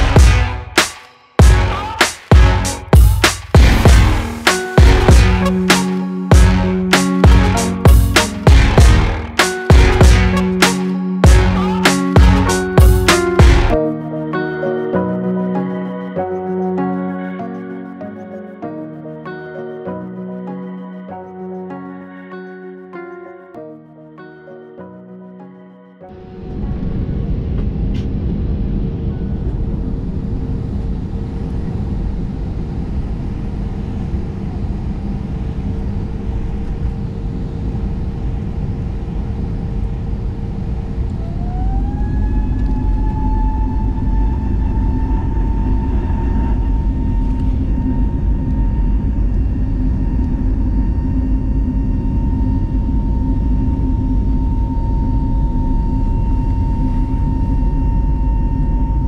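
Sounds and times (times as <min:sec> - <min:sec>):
jet engine rumble from cabin: 0:26.1 - 0:59.0.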